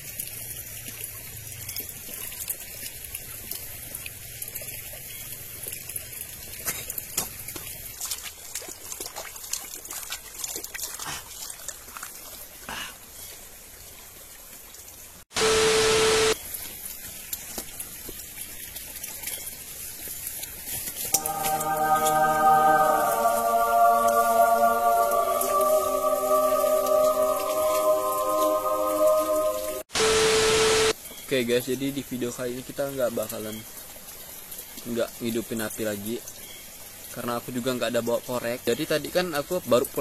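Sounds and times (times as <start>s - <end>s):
water trickling: 0.0s - 15.2s, 16.4s - 29.8s
loud burst of noise with tone: 15.3s - 16.4s, 25.7s - 31.0s.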